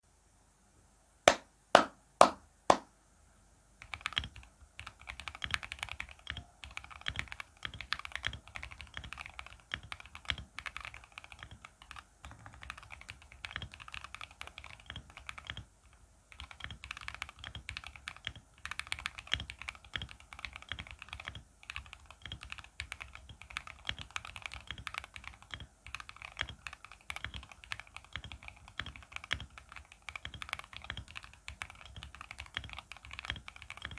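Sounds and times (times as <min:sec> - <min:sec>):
mechanical keyboard typing: 0:03.8 - 0:33.9.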